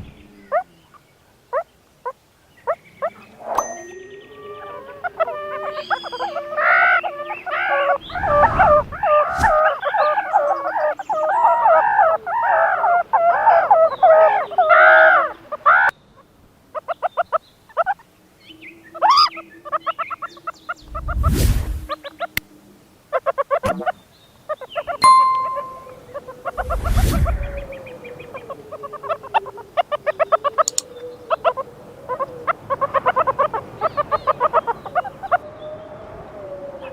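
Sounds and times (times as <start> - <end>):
bell-like ding: 3.6 - 4.5, 25.0 - 26.1
meerkat chirps: 4.6 - 8.1
meerkats calling harshly: 4.6 - 15.9, 23.2 - 25.0
low rumbling whoosh: 20.8 - 21.9.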